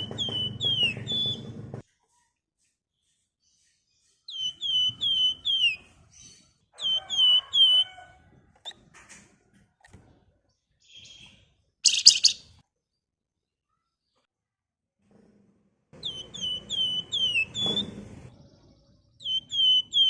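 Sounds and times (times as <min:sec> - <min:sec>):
harsh bird calls: 0:00.0 - 0:01.5, 0:04.3 - 0:08.8, 0:10.8 - 0:12.6, 0:16.0 - 0:20.0
bird whistling calls: 0:04.3 - 0:05.9, 0:11.8 - 0:12.5, 0:16.0 - 0:17.8, 0:19.2 - 0:20.0.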